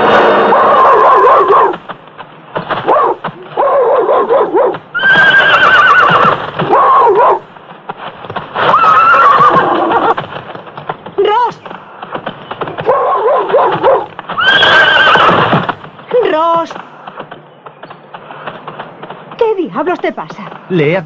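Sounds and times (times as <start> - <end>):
horses whinnying: 0.0 - 1.8, 2.9 - 7.3, 8.6 - 10.2, 12.8 - 15.8
hooves clopping: 0.0 - 21.0.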